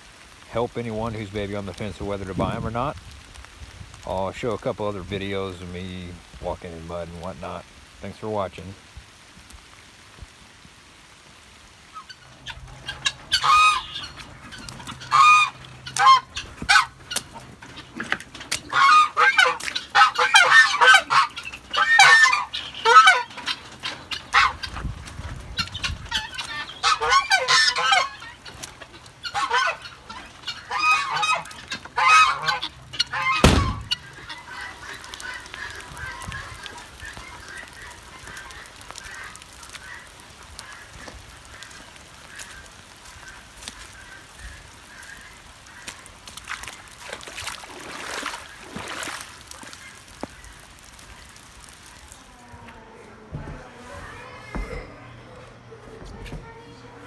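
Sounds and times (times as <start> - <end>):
geese honking: 11.8 - 52.1
sharp thump: 33.4 - 34.0.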